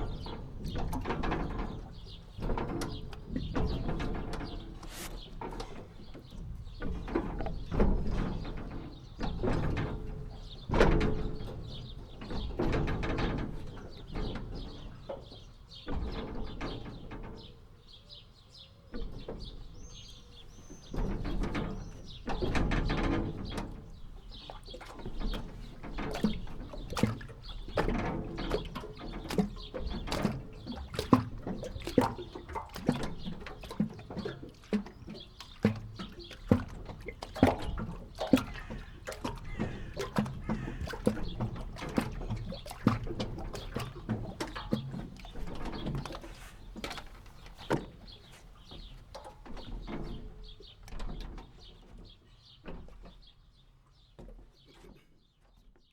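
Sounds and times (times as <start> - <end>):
jetty creaking and squeaking: 0.0 - 17.6, 19.2 - 50.2
water splashing and gurgling: 22.3 - 50.2.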